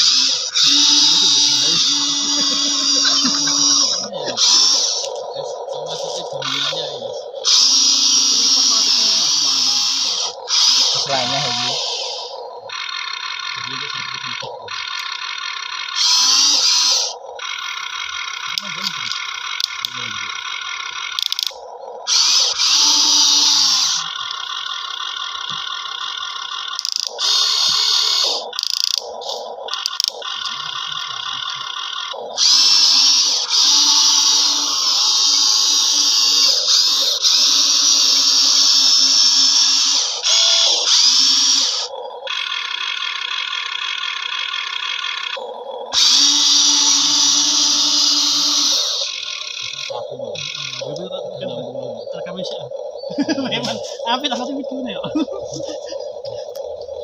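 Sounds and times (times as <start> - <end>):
toy electric motors whining: 0.0 - 57.0.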